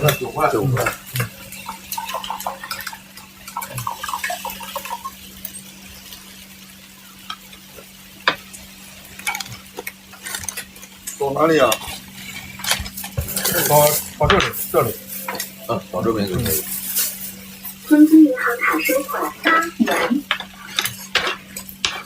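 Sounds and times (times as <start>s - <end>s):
metal utensils clattering and scraping: 0.0s - 5.7s, 9.0s - 22.0s
food sizzling: 0.0s - 22.0s
steady hum: 10.5s - 22.0s.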